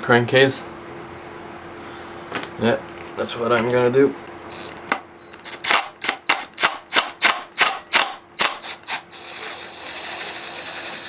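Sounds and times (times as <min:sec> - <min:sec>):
high-pitched motor whine with hiss: 0:08.4 - 0:11.0.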